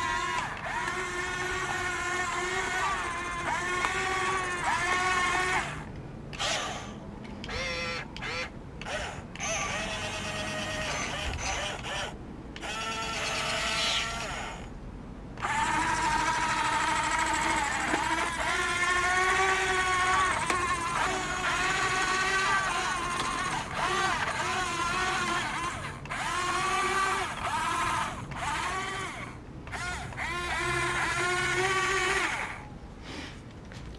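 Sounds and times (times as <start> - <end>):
electric motors whining: 0.0 - 14.7, 15.4 - 32.7.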